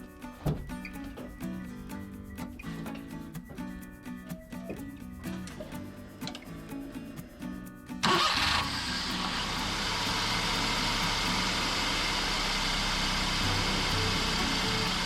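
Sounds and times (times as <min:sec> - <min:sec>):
truck engine starting and idling: 0:08.0 - 0:15.0.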